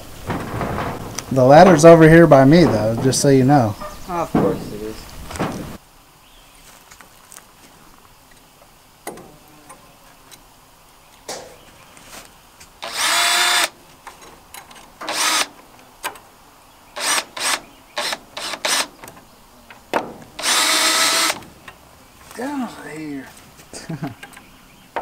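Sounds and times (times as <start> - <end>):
power drill driving screws: 12.8 - 13.8, 15.0 - 15.5, 17.0 - 18.9, 20.4 - 21.4.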